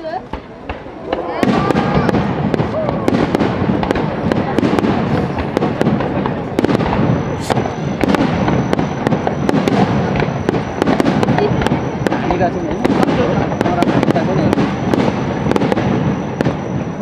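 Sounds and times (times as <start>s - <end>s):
continuous rumble: 0.0s - 17.0s
fireworks bangs and crackles: 0.0s - 17.0s
thin high whistle: 7.2s - 11.0s.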